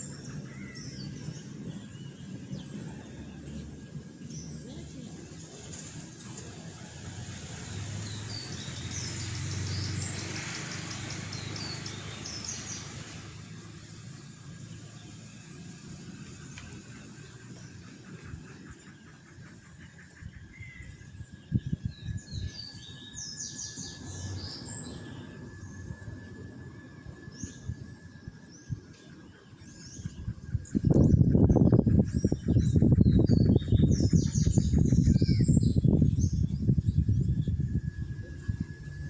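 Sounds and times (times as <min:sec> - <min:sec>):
small birds chirping: 0:00.0 - 0:39.0
low rumble: 0:20.9 - 0:39.0.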